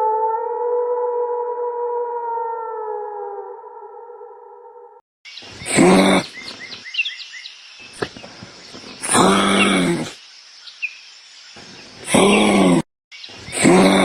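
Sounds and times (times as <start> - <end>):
birds chirping: 5.3 - 14.0
large animal roaring: 9.0 - 10.2, 12.1 - 12.8, 13.5 - 14.0.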